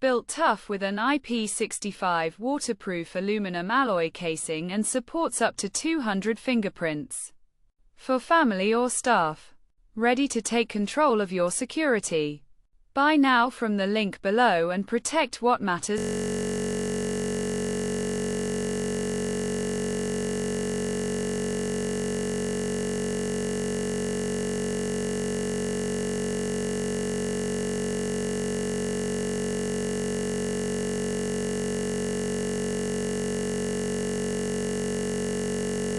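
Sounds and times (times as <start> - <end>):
electronic drone: 16.0 - 35.9.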